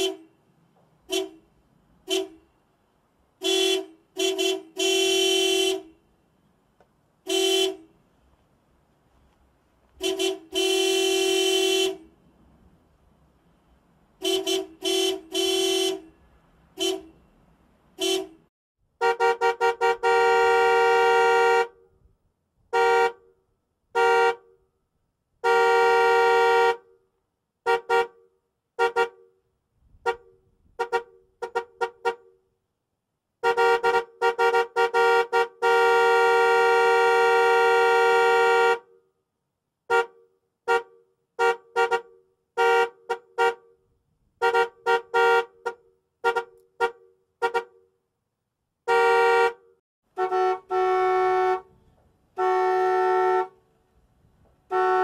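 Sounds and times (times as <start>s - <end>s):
car horn honking: 0.0s - 2.7s, 3.4s - 6.2s, 7.2s - 8.0s, 10.0s - 12.2s, 14.2s - 17.4s, 18.0s - 21.9s, 22.7s - 24.6s, 25.4s - 27.0s, 27.6s - 29.4s, 30.0s - 32.4s, 33.4s - 39.0s, 39.9s - 47.9s, 48.8s - 53.6s, 54.6s - 55.0s.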